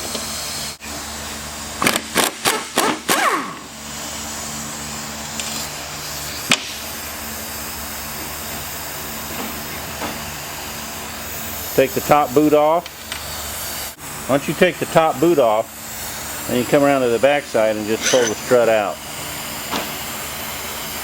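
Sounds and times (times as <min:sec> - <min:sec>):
steady shop hum: 0:00.0 - 0:21.0
pneumatic impact wrench bursts: 0:01.7 - 0:04.5, 0:15.0 - 0:21.0.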